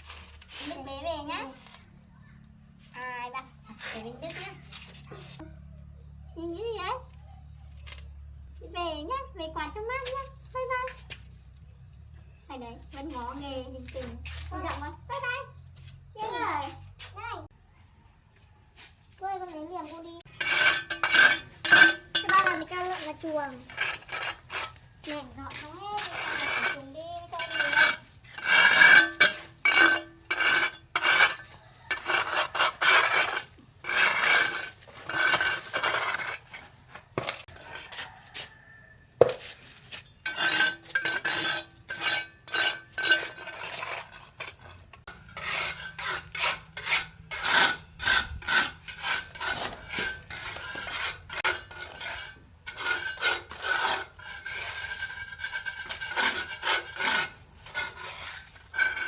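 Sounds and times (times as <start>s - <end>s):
rough scraping strokes: 0.0s - 1.9s, 12.9s - 17.5s, 18.7s - 59.0s.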